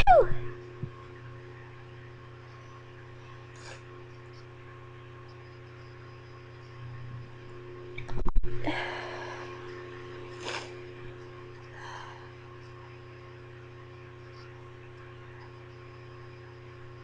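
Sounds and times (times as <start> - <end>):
low electrical hum: 0.0 - 17.0
short sniff: 10.4 - 10.8
breathy exhale: 11.7 - 12.4.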